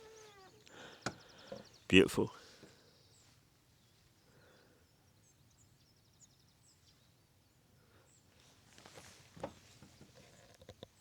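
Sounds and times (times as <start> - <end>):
distant bird chirps: 0.0 - 7.2
soft rustle: 8.3 - 11.0.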